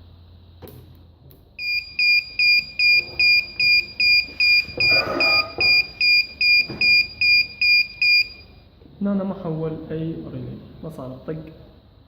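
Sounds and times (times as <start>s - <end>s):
high electronic buzzer beeping: 1.6s - 8.6s.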